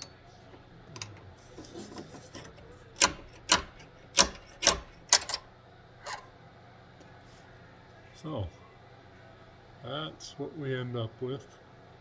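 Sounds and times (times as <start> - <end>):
hard objects handled and rubbing: 0.0 - 5.4.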